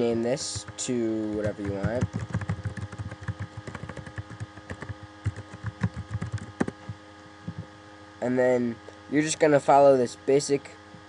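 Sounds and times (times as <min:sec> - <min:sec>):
electrical hum: 0:00.0 - 0:11.0
keyboard typing: 0:00.4 - 0:07.6.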